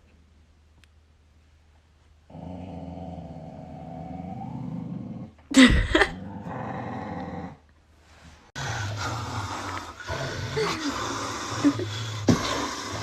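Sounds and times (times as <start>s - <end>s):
dog growling: 2.3s - 5.4s, 6.0s - 7.6s, 8.6s - 13.0s.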